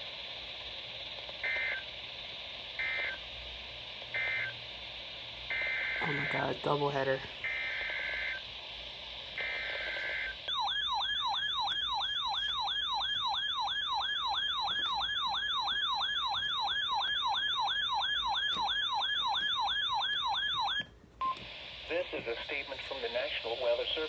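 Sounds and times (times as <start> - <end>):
siren-like attention tone: 5.5 - 6.8, 9.4 - 20.8.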